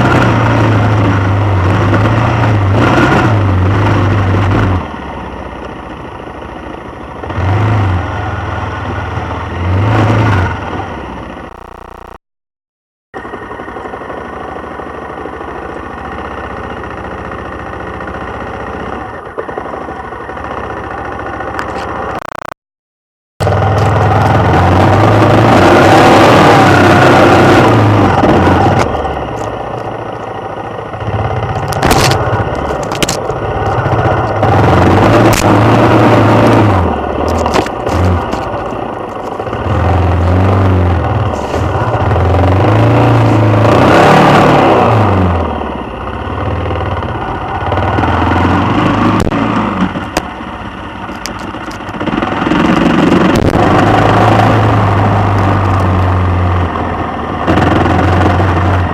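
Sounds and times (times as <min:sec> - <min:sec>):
motorcycle engine revving: 0:00.0 - 0:05.4, 0:07.1 - 0:12.2, 0:23.4 - 0:58.9.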